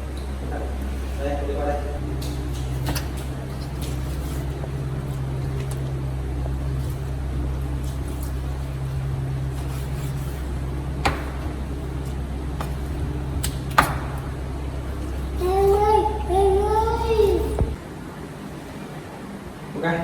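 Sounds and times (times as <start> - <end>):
steady low hum: 0.0 - 20.0
sharp knocks: 11.0 - 14.3.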